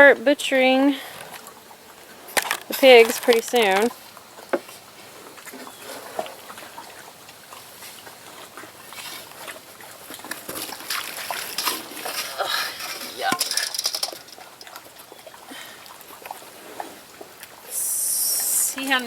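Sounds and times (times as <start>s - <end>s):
splashing in mud: 4.7s - 17.6s.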